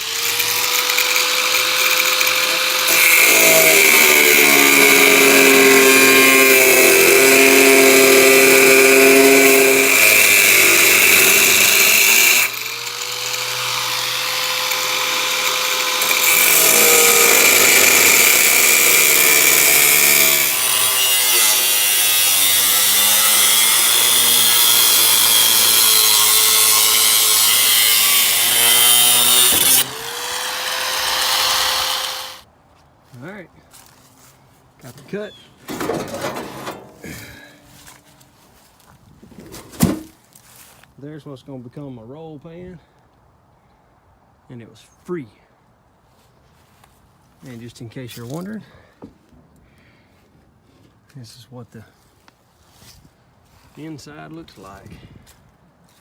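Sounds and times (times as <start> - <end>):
power tool cutting sheet steel: 0.0 - 32.4, 35.7 - 37.7.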